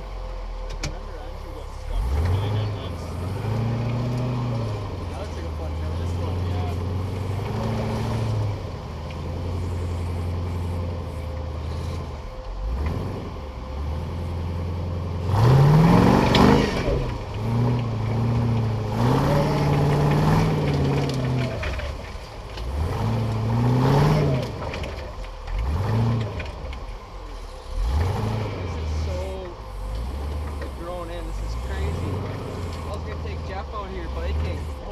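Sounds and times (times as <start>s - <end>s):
buggy engine idling and revving: 0.0s - 34.9s.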